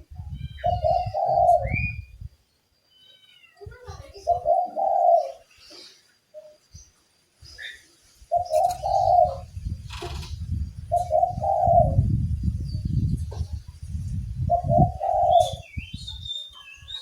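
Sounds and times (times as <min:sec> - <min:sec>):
dove cooing: 0:00.6 - 0:02.0, 0:04.1 - 0:05.5, 0:08.3 - 0:09.5, 0:10.9 - 0:12.2, 0:14.5 - 0:15.7.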